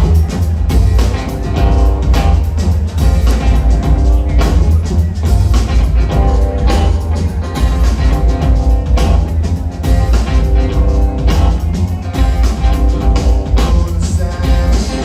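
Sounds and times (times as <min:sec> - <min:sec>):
heavy deep bass line: 0:00.0 - 0:15.0
rock band playing: 0:00.0 - 0:15.0.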